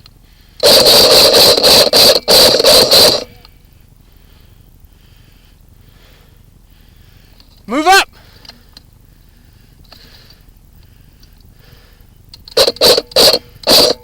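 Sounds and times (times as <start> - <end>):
airsoft gun full-auto bursts: 0.6 - 3.4, 12.5 - 14.0.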